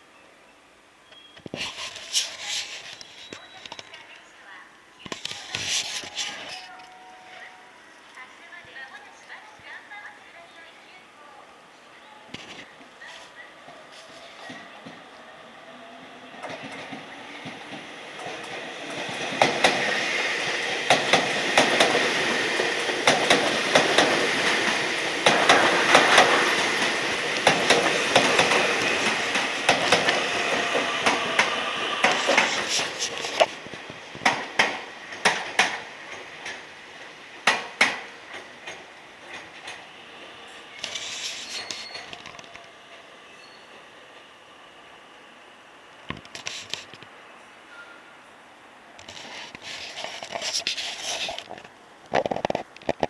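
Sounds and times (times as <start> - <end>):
electric train running past: 13.5 - 46.1
wheels clacking over rail joints: 16.2 - 42.8, 49.0 - 53.0.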